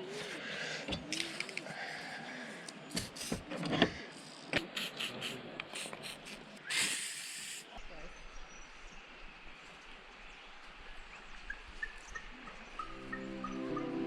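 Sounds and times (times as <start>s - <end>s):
aerosol spray hiss: 4.6s - 7.7s.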